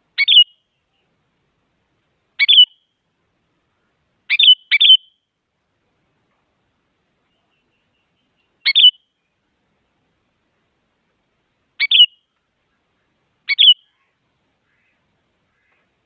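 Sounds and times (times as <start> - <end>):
bird calls: 0.2 - 1.2, 2.4 - 2.9, 3.7 - 5.2, 7.2 - 9.4, 11.8 - 16.0.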